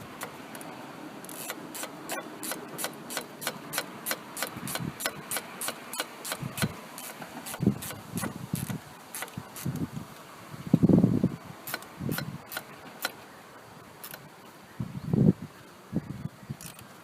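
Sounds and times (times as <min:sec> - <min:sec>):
ratchet spanner clicking: 0:01.3 - 0:09.8, 0:11.7 - 0:13.2.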